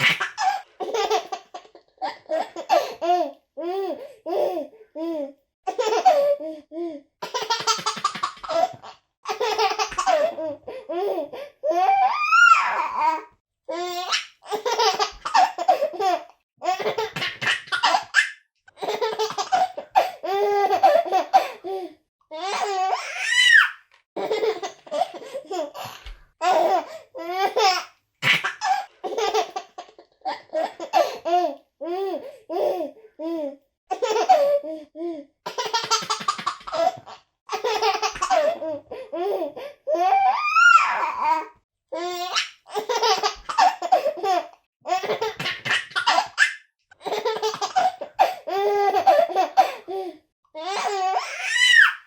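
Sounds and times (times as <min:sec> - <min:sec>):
baby laughing and squealing: 0:00.0 - 0:04.6, 0:07.2 - 0:13.2, 0:13.8 - 0:21.6, 0:22.4 - 0:29.6, 0:35.5 - 0:50.0, 0:50.6 - 0:52.0.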